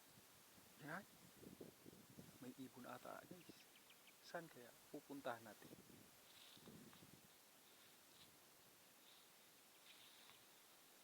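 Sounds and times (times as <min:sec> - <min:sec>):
bird chirping: 0:02.8 - 0:04.7.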